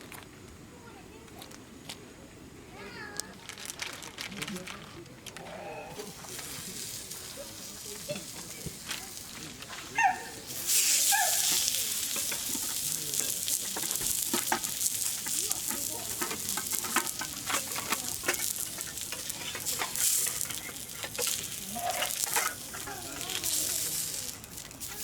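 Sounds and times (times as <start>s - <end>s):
food sizzling on a hot pan: 6.0s - 25.0s.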